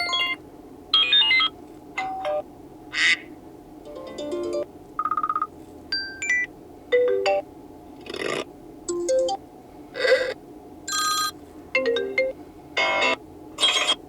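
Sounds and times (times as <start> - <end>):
phone ringtone snippets: 10.9 - 13.0.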